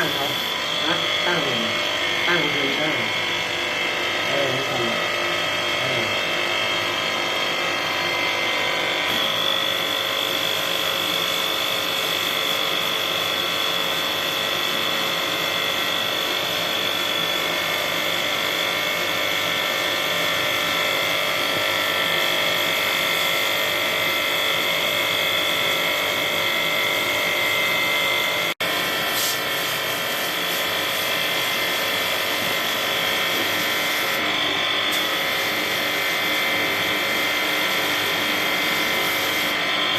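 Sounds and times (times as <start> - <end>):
electric motor whining: 0.0 - 6.3.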